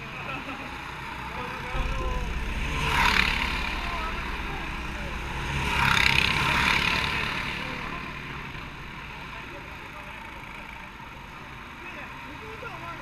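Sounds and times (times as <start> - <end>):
hissing noise: 1.7 - 9.0.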